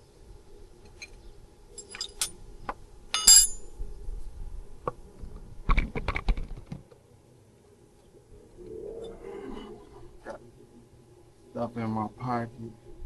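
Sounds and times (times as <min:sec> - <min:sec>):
small metal objects clinking: 0:01.8 - 0:02.3
bright metallic ring: 0:03.2 - 0:03.8.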